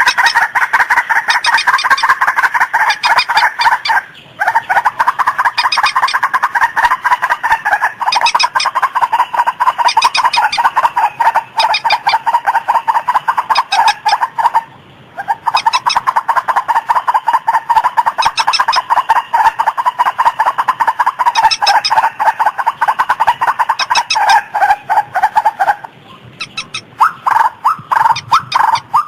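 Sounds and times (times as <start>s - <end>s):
bird harsh clucking calls: 0.0s - 29.0s.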